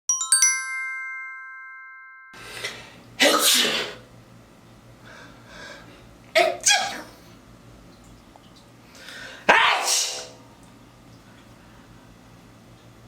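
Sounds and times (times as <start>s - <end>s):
bright chime: 0.1s - 2.6s
person sneezing: 3.2s - 4.0s, 9.5s - 10.4s.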